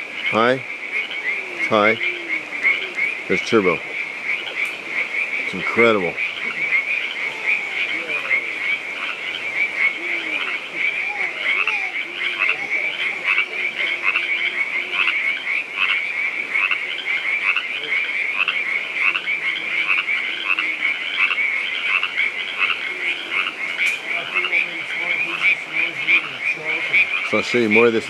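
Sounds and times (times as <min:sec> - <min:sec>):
frogs calling: 0:00.0 - 0:28.0.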